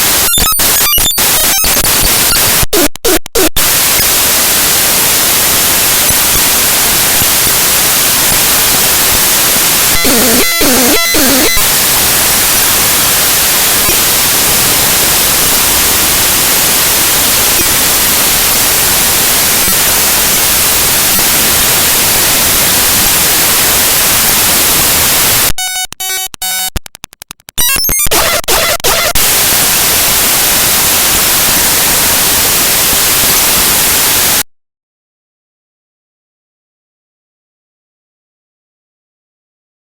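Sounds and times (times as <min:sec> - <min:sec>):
harsh static hiss: 0:00.0 - 0:34.4
buzzy pitched tones: 0:09.8 - 0:15.0, 0:23.5 - 0:29.6.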